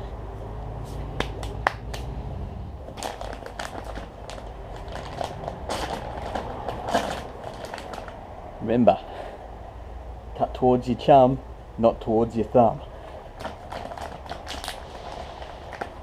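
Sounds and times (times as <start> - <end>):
packaging rustling and crinkling: 2.9 - 8.2, 13.3 - 16.0.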